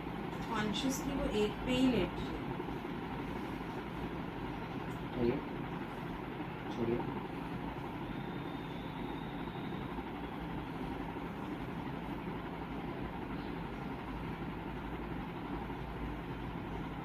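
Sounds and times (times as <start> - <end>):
machine rumbling and humming: 0.0 - 17.0.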